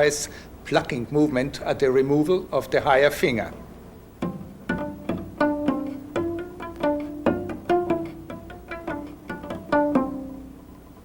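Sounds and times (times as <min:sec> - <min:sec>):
cello playing quick notes: 0:04.2 - 0:10.6.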